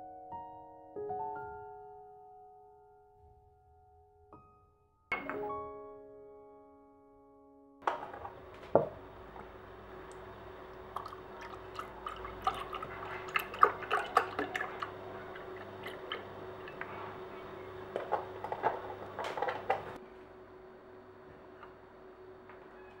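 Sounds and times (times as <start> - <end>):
faint steady hum: 7.8 - 23.0.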